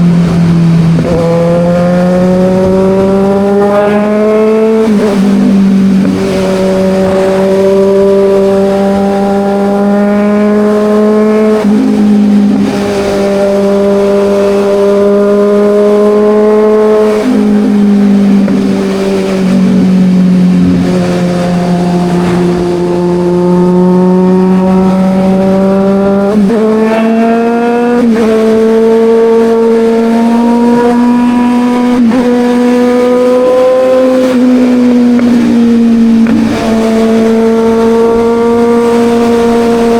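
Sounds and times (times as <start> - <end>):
motorcycle engine under way: 0.0 - 39.9.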